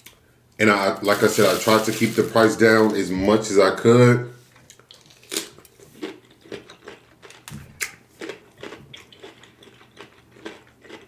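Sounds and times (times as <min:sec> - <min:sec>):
chewing with wet mouth clicks: 0:04.7 - 0:11.0.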